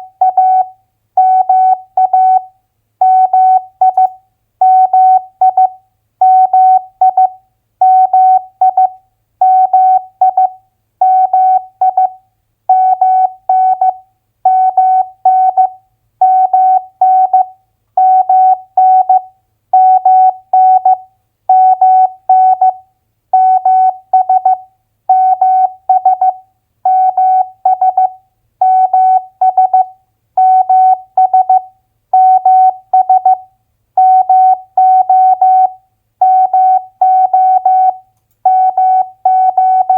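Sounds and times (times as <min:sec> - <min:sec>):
morse code beeps: 0:34.0 - 0:39.9.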